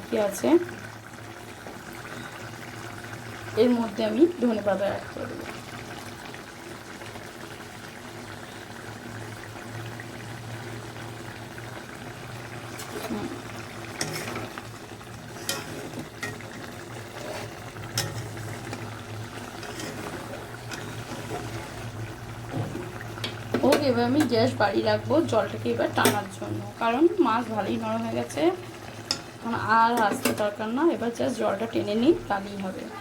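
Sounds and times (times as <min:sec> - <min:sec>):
curry simmering and bubbling: 0:00.0 - 0:33.0
utensil clicking against pan: 0:23.2 - 0:24.4, 0:29.0 - 0:29.3.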